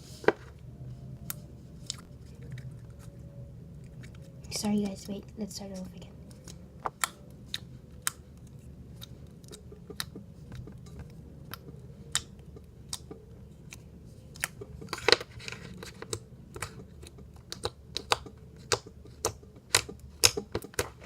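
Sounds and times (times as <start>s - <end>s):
slime clicking and popping: 16.6s - 20.9s.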